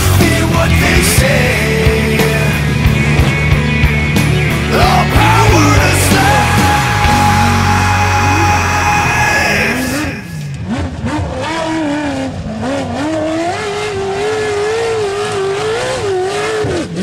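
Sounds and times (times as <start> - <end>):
rock music: 0.0 - 10.8
off-road vehicle engine revving: 0.0 - 17.0.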